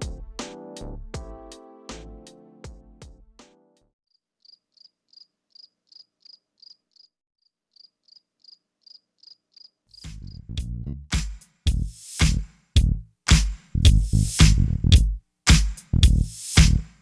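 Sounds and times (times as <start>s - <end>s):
cricket chirping: 4.4s - 7.1s, 7.7s - 9.8s.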